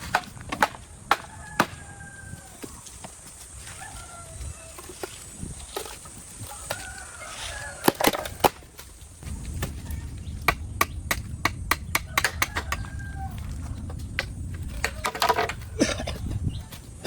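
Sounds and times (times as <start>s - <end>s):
tool striking bamboo: 0.0s - 1.8s, 10.4s - 12.9s.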